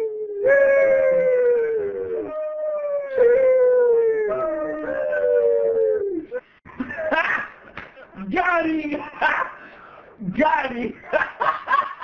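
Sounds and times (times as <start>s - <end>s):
dog howling: 0.0s - 6.4s.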